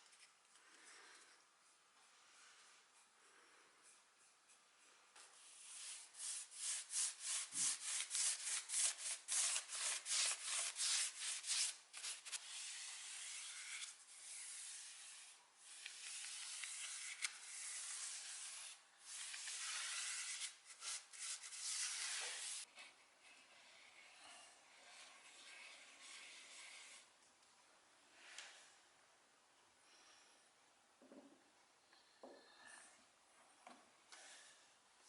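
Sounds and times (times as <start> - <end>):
sandpaper rubbing on wood: 5.4 - 22.6.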